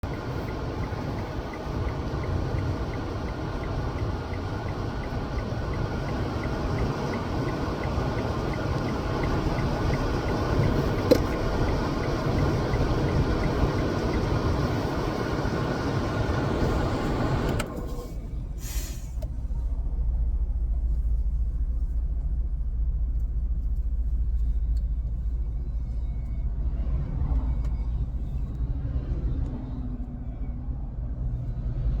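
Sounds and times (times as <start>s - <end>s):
deep low rumble: 16.6s - 32.0s.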